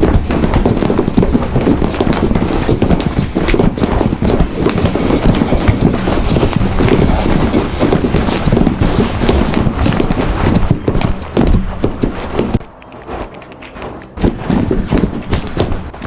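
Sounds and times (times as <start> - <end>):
rapid knocks and taps: 0.0 - 16.0
high hiss: 4.6 - 7.8.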